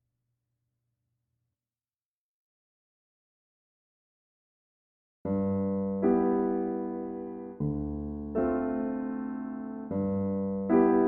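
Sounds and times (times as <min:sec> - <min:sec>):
slow piano chords: 0:05.3 - 0:11.0.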